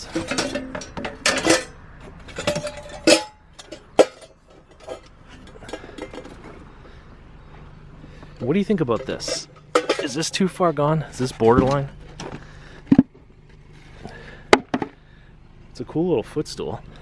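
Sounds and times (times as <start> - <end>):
copper pans clanking together: 0.0 - 6.7, 8.2 - 13.2.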